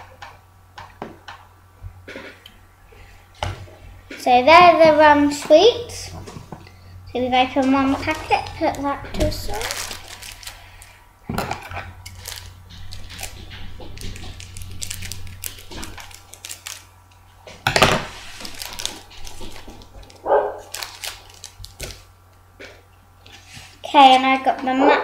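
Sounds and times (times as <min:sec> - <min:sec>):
foil packet crinkling and tearing: 0:07.5 - 0:17.0, 0:17.7 - 0:22.1.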